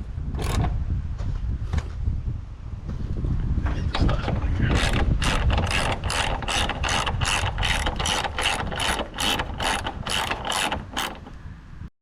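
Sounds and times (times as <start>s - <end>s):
ratchet wrench clicking: 4.7s - 11.4s.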